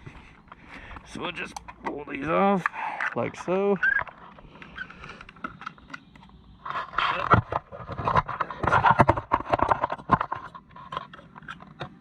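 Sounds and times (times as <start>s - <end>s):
plastic clicks and knocks: 7.2s - 12.0s.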